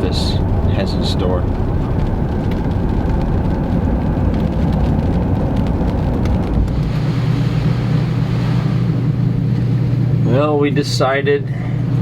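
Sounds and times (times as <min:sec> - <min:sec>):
raindrop ticks: 0:00.0 - 0:07.0
rain: 0:00.0 - 0:08.6
low rumble of vehicle noise: 0:00.0 - 0:12.0.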